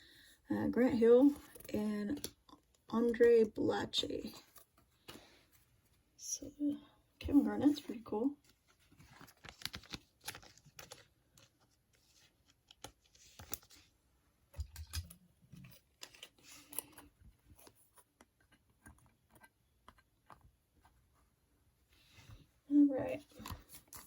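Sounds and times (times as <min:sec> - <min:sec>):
trading cards rustling and clicking: 0:08.4 - 0:13.9, 0:14.5 - 0:21.0, 0:23.0 - 0:24.0.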